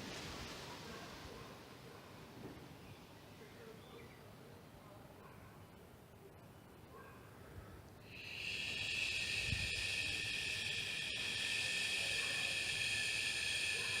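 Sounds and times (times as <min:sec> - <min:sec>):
high-pitched hissing buzz: 0:08.0 - 0:14.0.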